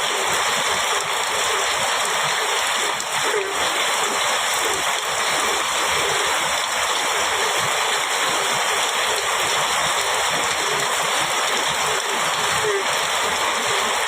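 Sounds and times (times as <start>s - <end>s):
heavy rain pouring: 0.0s - 14.0s.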